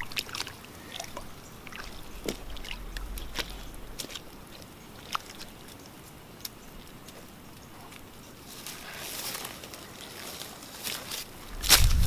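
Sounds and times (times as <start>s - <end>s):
wind rumble on microphone: 1.1s - 5.7s, 11.4s - 12.0s.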